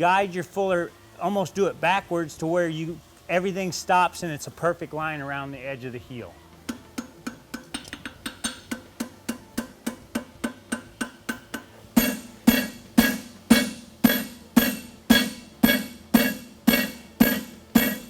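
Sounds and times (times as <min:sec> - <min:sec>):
hammer striking steel on anvil: 0:06.7 - 0:18.0.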